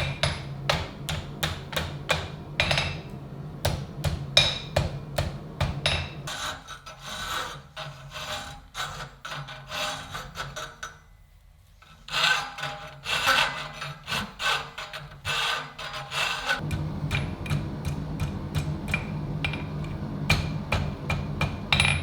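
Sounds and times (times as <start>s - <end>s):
hand file rasping on steel: 6.3s - 10.8s, 11.9s - 16.6s.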